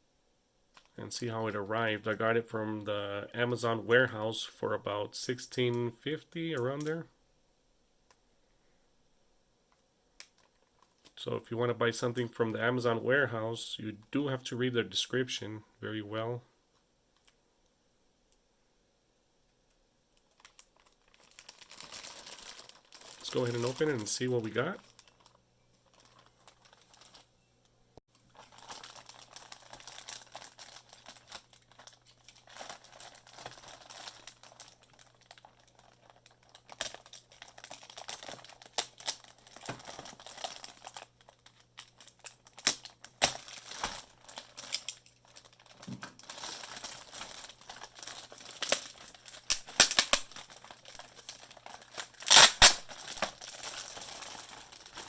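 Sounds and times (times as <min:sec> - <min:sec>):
packaging crinkling and rustling: 0:09.7 - 0:11.3, 0:20.1 - 0:27.3, 0:28.1 - 0:55.0.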